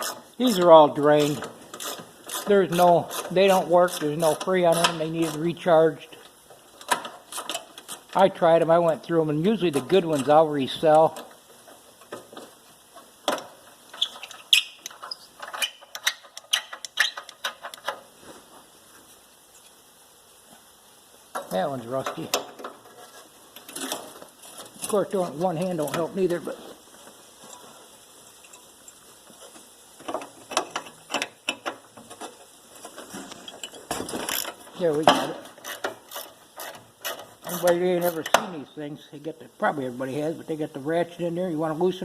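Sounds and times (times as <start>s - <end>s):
ratchet wrench clicking: 0.0s - 5.5s, 6.8s - 8.2s, 33.6s - 34.6s, 35.6s - 38.4s.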